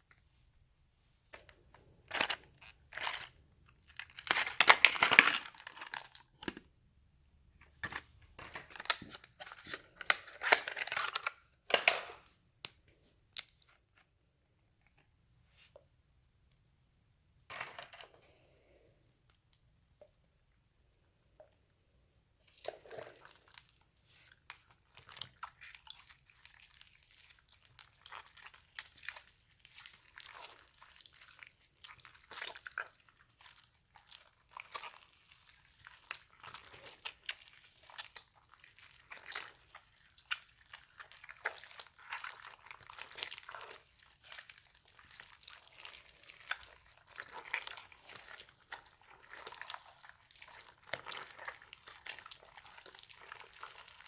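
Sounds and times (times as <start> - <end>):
slime squished by hand: 24.4 - 54.0.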